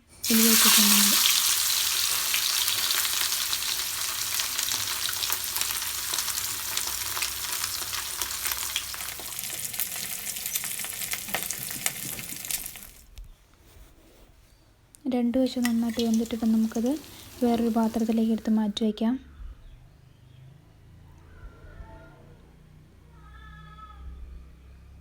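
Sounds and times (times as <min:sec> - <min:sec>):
fish sizzling in hot oil: 0:00.0 - 0:13.0, 0:15.4 - 0:18.6.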